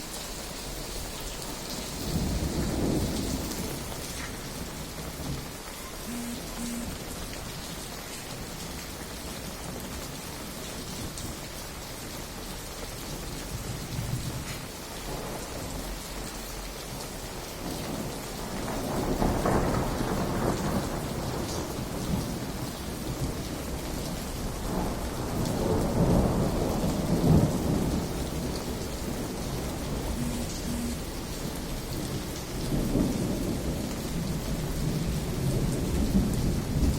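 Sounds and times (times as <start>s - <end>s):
steady rain falling: 0.0s - 36.9s
thunder rumbling: 2.0s - 7.6s, 17.6s - 23.4s, 24.4s - 36.9s.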